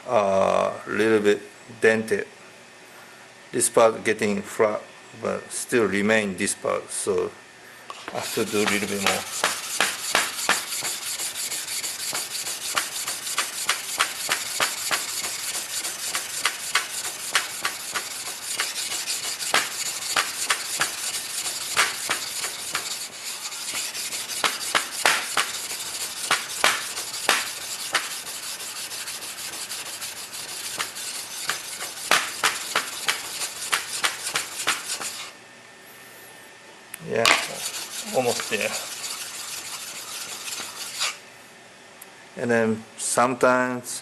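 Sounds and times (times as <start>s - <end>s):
whetstone scraping back and forth: 8.0s - 35.3s, 37.4s - 41.2s.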